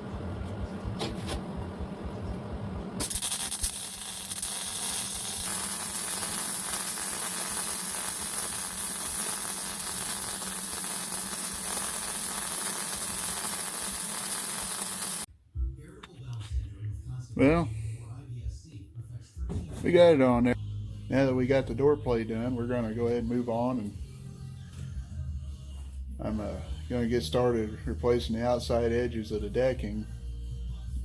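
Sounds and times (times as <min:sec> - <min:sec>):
constant low hum: 0:00.0 - 0:13.2
loud steady hissing: 0:03.0 - 0:15.3.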